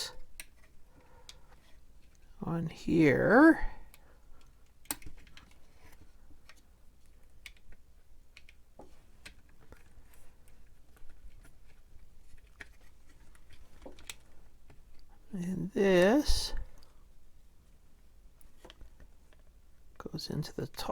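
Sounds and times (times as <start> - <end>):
faint clicks and taps: 3.9 - 15.1.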